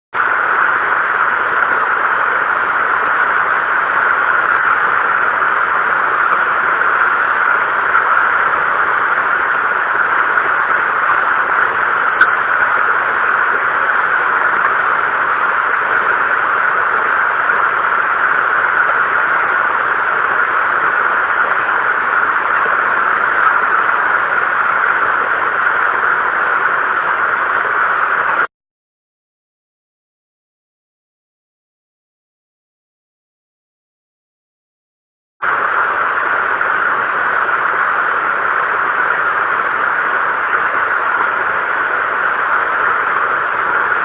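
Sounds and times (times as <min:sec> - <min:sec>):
heavy rain hissing: 0:00.2 - 0:28.5, 0:35.4 - 0:44.0.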